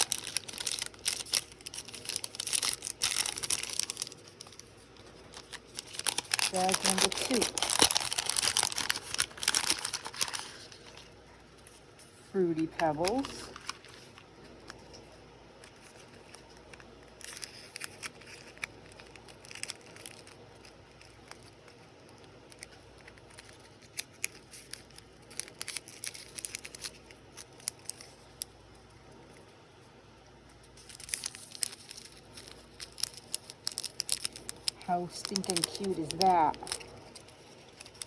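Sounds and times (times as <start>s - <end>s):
plastic packaging crinkling: 0.0s - 29.5s, 30.5s - 38.0s.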